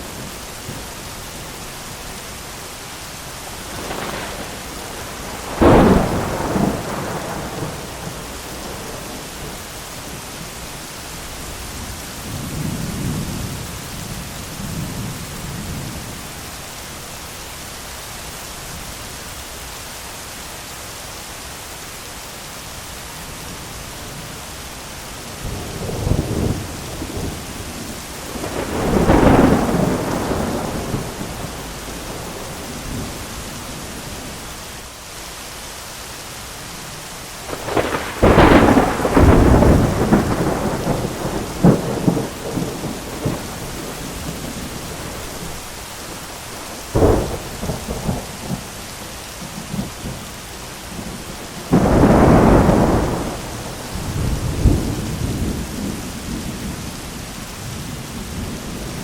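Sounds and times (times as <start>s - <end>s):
heavy rain: 0.0s - 59.0s
thunder: 3.7s - 9.6s, 25.5s - 33.3s, 37.5s - 45.6s, 46.9s - 48.8s, 51.0s - 56.9s.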